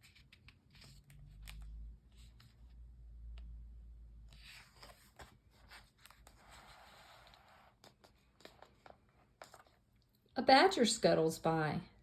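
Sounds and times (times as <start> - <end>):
paper rustling of pages: 0.0 - 3.5, 4.2 - 10.0.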